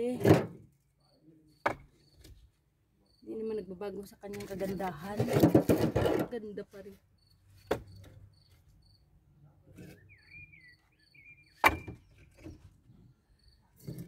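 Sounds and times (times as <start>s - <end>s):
crickets chirping: 3.0s - 3.7s, 7.1s - 9.1s, 13.1s - 13.8s.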